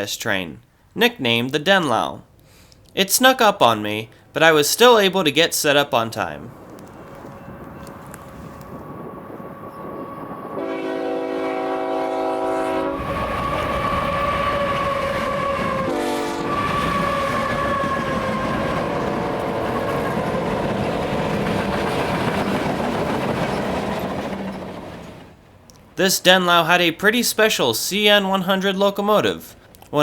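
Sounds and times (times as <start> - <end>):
train wheels rumbling on rails: 4.5 - 26.0
train horn blasts: 6.9 - 21.2.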